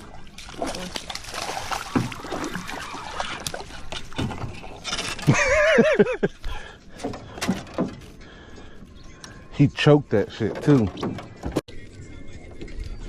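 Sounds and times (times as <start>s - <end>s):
splashing and scuffling: 0.0s - 8.2s.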